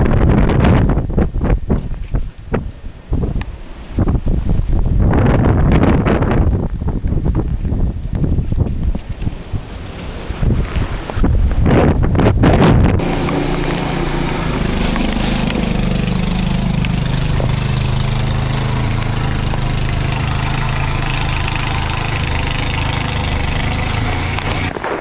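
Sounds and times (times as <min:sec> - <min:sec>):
wind noise on microphone: 0:00.0 - 0:25.0
engine idling: 0:13.0 - 0:24.7.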